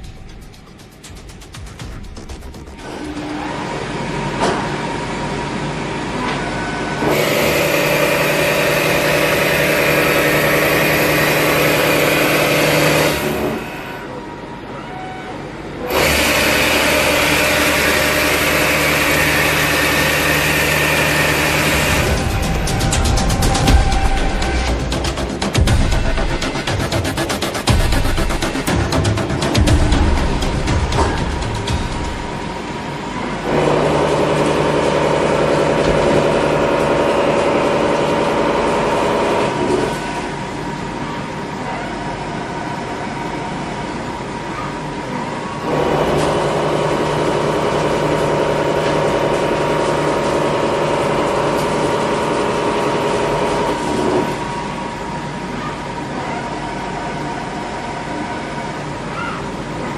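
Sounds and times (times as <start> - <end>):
constant whine: 0.0 - 59.9
cutter pitched hum: 0.0 - 59.9
milling machine running: 0.0 - 59.9
cutter rushing noise: 15.9 - 39.9.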